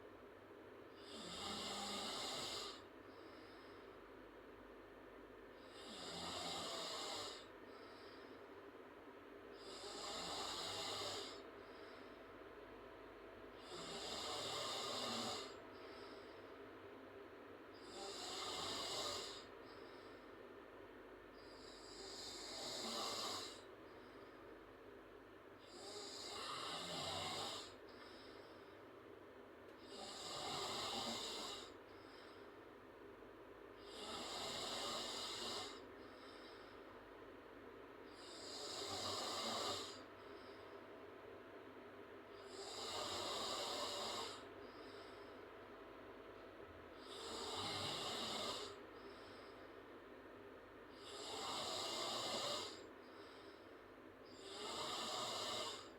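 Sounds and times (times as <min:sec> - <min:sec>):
girl snoring: 0:01.0 - 0:02.9, 0:05.7 - 0:07.5, 0:09.6 - 0:11.4, 0:13.6 - 0:15.6, 0:17.8 - 0:19.5, 0:21.6 - 0:23.7, 0:25.7 - 0:27.8, 0:29.8 - 0:31.8, 0:33.8 - 0:35.8, 0:38.2 - 0:40.0, 0:42.4 - 0:44.5, 0:47.0 - 0:48.8, 0:51.0 - 0:52.9, 0:54.3 - 0:55.9.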